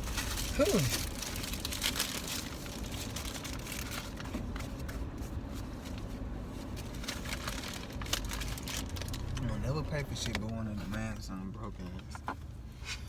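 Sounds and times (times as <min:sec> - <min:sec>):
car cabin rumble: 0:00.0 - 0:13.0.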